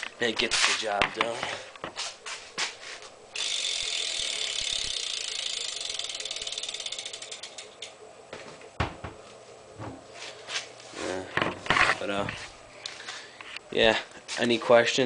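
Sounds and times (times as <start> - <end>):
bicycle rear hub ratcheting: 3.3 - 8.0.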